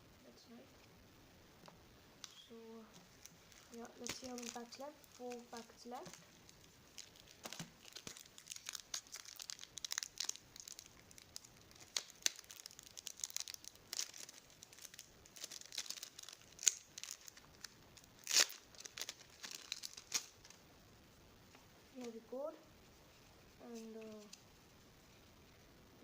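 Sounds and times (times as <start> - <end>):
plastic wrapper crinkling: 2.2 - 20.6
sharp plastic rips: 3.2 - 5.4, 6.0 - 20.6.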